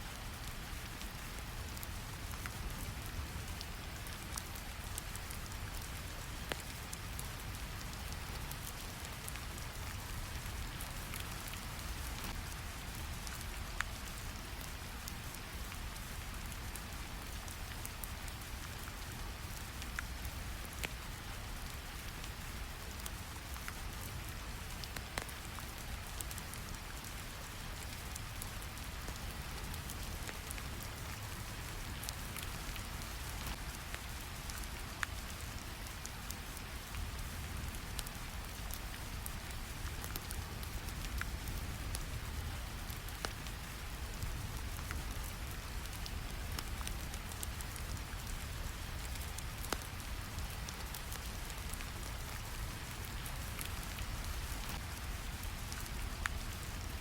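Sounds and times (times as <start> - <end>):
steady rain: 0.0 - 57.0
fire crackling and popping: 23.0 - 57.0.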